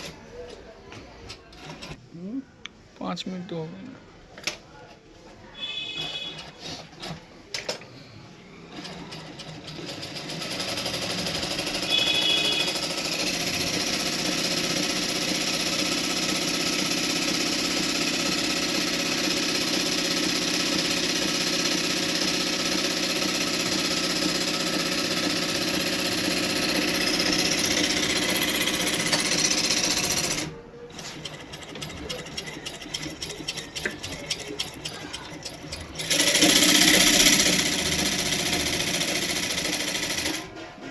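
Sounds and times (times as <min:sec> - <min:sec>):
sewing machine running: 0:08.7 - 0:40.6.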